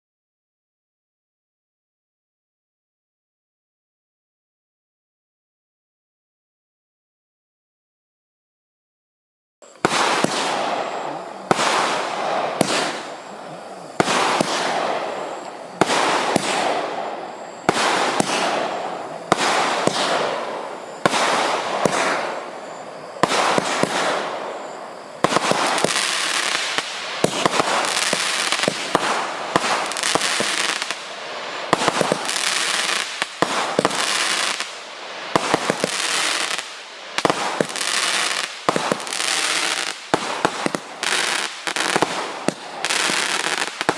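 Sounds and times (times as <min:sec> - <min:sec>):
firework bangs: 0:09.7 - 0:43.9.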